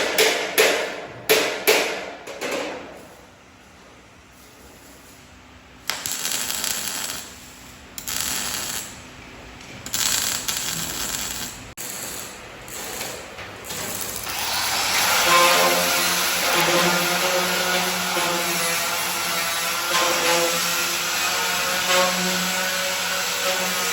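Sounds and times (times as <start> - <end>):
power tool working steel: 9.9 - 23.9.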